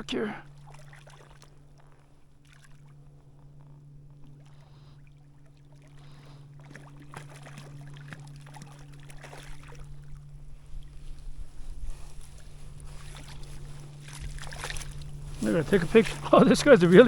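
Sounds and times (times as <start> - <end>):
steady low hum: 0.0 - 17.0
fish splashing in water: 0.6 - 2.9, 4.2 - 10.3, 12.3 - 17.0.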